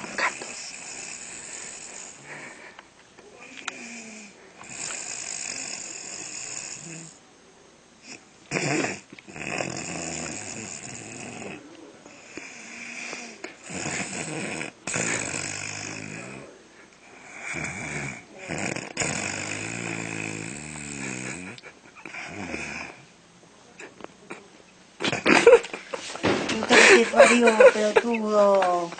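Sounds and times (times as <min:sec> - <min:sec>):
woman snoring: 0:00.0 - 0:02.6, 0:03.7 - 0:07.2, 0:08.1 - 0:16.5, 0:17.2 - 0:23.0.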